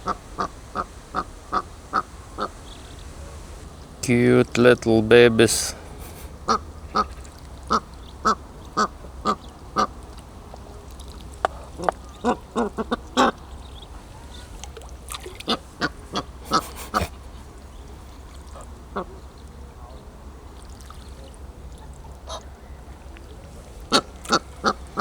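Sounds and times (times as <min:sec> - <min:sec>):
ducks quacking: 0:00.0 - 0:03.1, 0:04.0 - 0:10.0, 0:15.3 - 0:17.4, 0:23.7 - 0:25.0.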